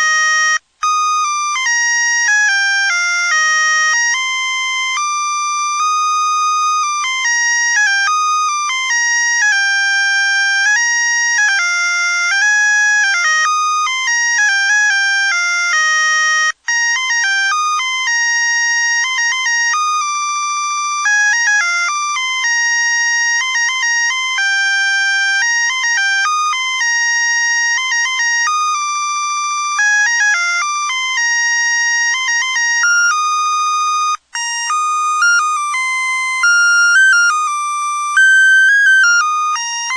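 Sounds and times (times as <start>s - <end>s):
beeping electronic melody: 29.6s - 39.9s.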